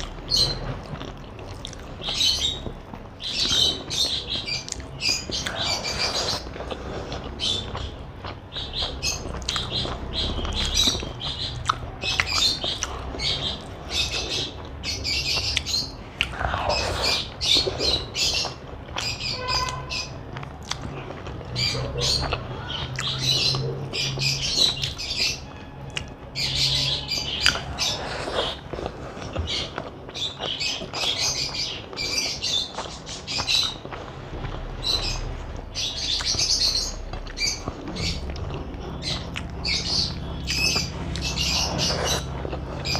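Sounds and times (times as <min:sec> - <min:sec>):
person chewing: 0:00.0 - 0:02.1, 0:04.6 - 0:19.0, 0:19.6 - 0:23.9, 0:27.4 - 0:31.1, 0:32.7 - 0:34.6, 0:37.1 - 0:42.9.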